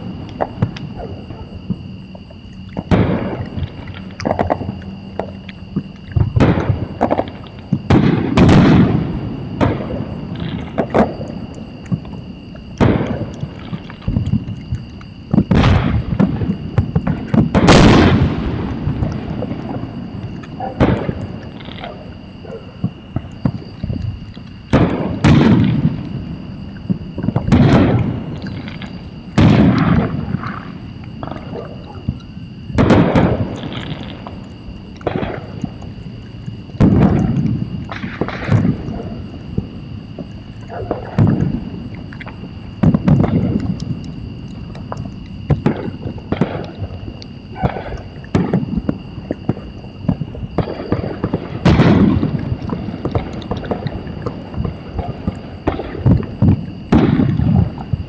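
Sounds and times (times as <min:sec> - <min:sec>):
fireworks bangs and booms: 0:02.8 - 0:04.7, 0:06.2 - 0:11.3, 0:12.8 - 0:14.4, 0:15.3 - 0:24.0, 0:24.7 - 0:32.2, 0:32.8 - 0:34.4, 0:35.0 - 0:35.8, 0:36.8 - 0:39.8, 0:40.7 - 0:41.8, 0:42.8 - 0:44.0, 0:45.5 - 0:58.0.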